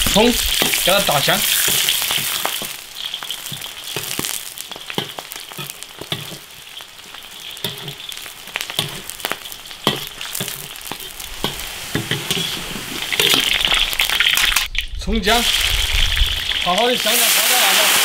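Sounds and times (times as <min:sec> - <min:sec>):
onions sizzling in hot oil: 0:00.0 - 0:18.0
spatula clicking and scraping wok: 0:00.1 - 0:14.0.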